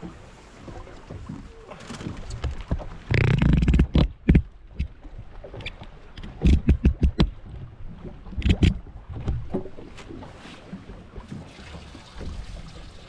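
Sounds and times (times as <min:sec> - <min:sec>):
low thumps: 0:02.4 - 0:05.0
sharp knocks and clatter: 0:05.6 - 0:07.4.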